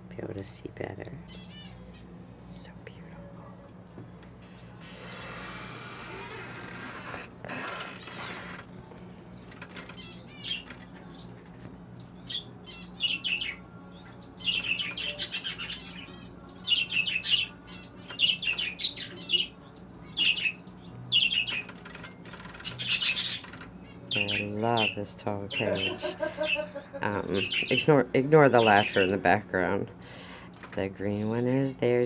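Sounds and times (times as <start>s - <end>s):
budgerigars chirping: 9.8s - 11.3s, 12.0s - 13.6s, 14.2s - 32.0s.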